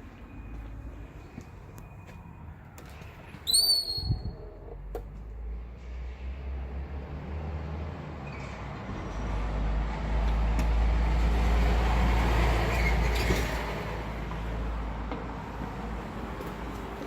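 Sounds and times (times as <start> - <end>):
vehicle passing by: 4.6 - 15.0.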